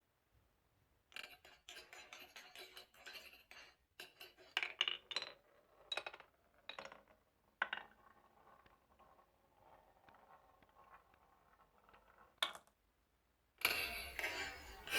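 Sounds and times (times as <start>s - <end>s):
glass marbles clicking on track: 1.2s - 12.7s.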